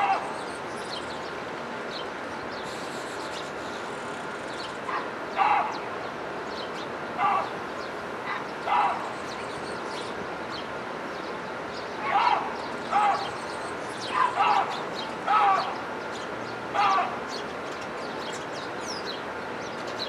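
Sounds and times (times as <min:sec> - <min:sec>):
loud animal calls: 0:00.0 - 0:00.6, 0:07.2 - 0:07.6, 0:08.3 - 0:09.3, 0:12.0 - 0:13.4, 0:14.0 - 0:15.8, 0:16.7 - 0:17.2
small birds chirping: 0:00.0 - 0:20.0.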